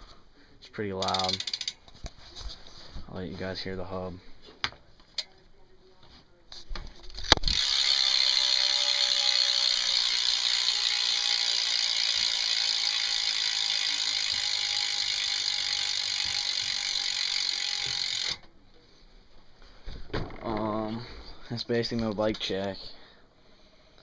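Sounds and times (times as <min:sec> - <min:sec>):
bike hub ratcheting buzz: 0:01.0 - 0:01.8, 0:07.4 - 0:18.4.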